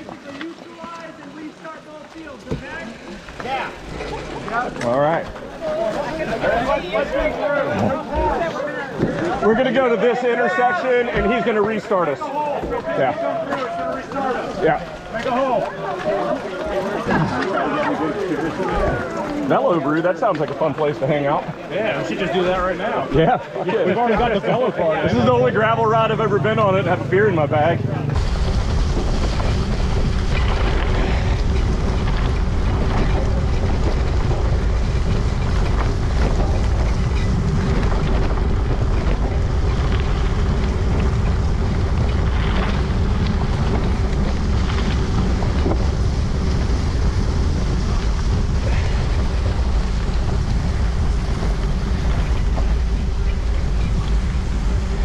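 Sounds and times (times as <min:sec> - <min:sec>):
wind rumble on microphone: 0:28.1 - 0:55.0.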